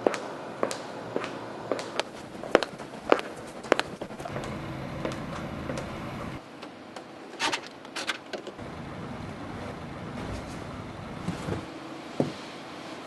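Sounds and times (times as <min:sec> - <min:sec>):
engine rumble: 0:00.6 - 0:06.5, 0:08.6 - 0:12.3.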